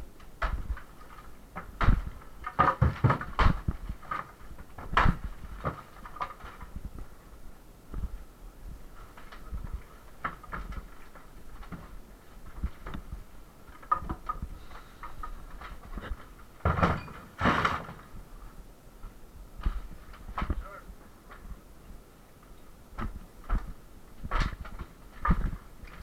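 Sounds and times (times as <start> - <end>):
demolition knocks and clatters: 0.4 - 7.2, 9.0 - 18.2, 23.0 - 26.0.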